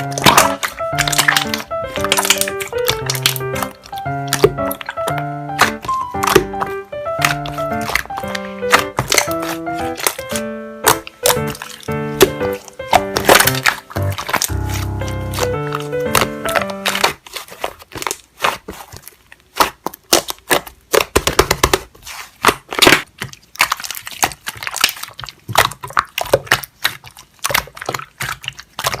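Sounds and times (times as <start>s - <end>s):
sharp clicks and pops: 0.0s - 17.1s
slime squeezed by hand: 0.0s - 20.3s.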